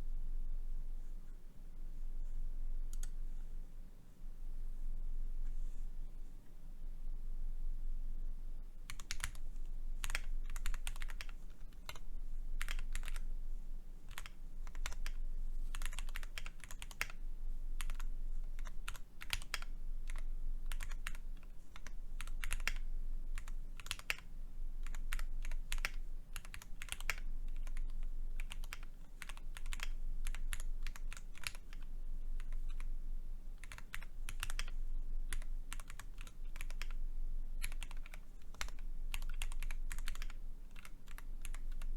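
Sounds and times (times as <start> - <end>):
mechanical keyboard typing: 8.9 - 9.4, 10.0 - 13.3, 14.1 - 17.2, 17.8 - 32.9, 33.6 - 37.0, 37.6 - 41.9.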